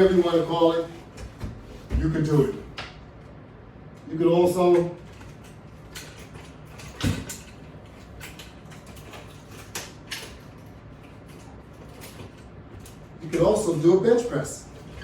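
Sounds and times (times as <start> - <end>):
equipment clicks and creaks: 3.9 - 13.9.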